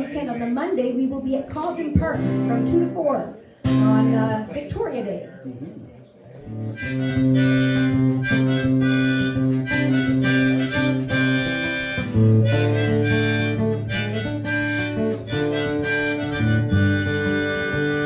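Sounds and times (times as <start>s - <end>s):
strummed acoustic guitar: 1.9s - 4.5s, 6.4s - 18.0s
harmonica playing chords: 6.7s - 18.0s.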